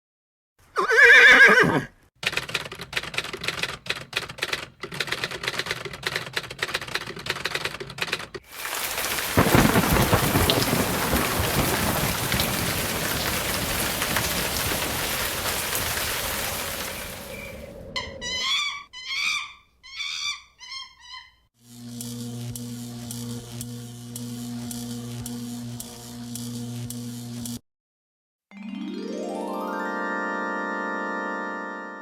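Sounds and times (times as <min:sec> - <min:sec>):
typewriter keystrokes: 0:02.2 - 0:08.4
heavy rain: 0:08.4 - 0:17.8
low thunderclap: 0:08.5 - 0:18.3.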